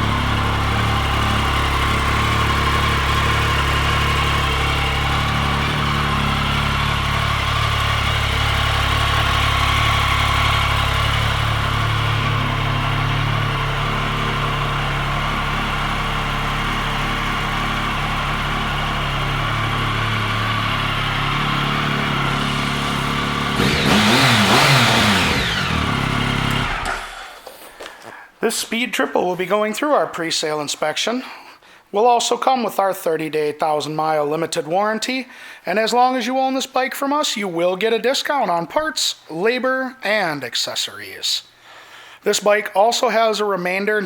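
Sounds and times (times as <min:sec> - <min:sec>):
motorcycle engine idling and revving: 0:00.0 - 0:27.4.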